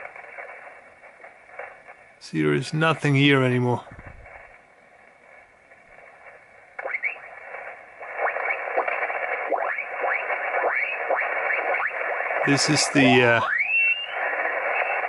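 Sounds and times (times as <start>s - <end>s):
radio band hiss: 0.0s - 15.0s
mistuned radio voice: 2.2s - 3.9s, 12.4s - 13.5s.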